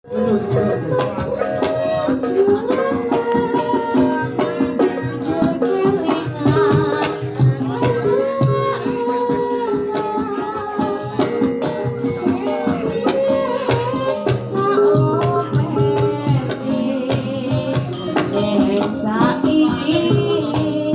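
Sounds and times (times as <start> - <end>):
hand drums beating: 0.1 - 20.9
person singing: 12.2 - 14.1.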